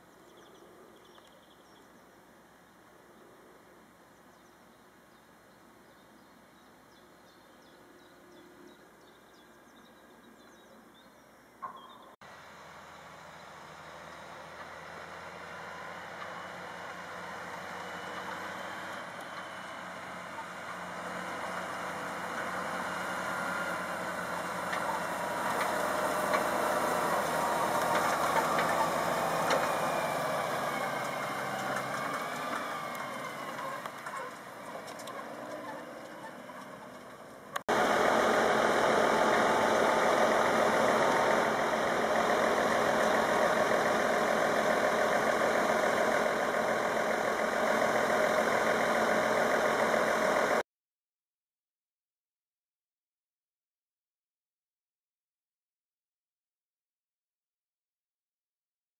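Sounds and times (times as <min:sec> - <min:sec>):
tractor diesel engine passing: 0:11.6 - 0:50.6.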